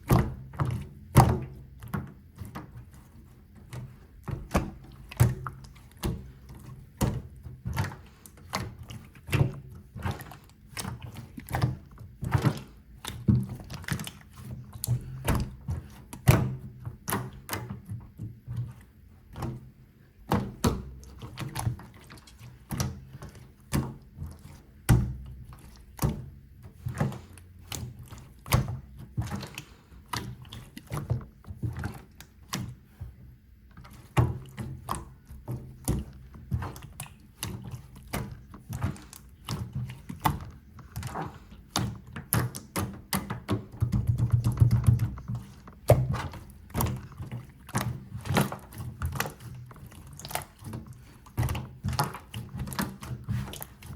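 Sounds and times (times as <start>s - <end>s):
slime squished by hand: 0.0s - 53.9s.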